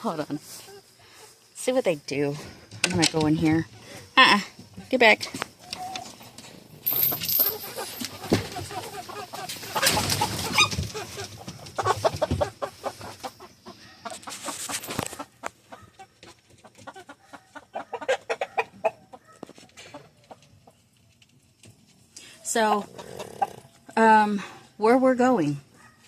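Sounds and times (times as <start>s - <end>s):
chickens clucking and squawking: 3.5s - 24.9s
scuffling: 5.2s - 13.4s, 14.1s - 15.5s.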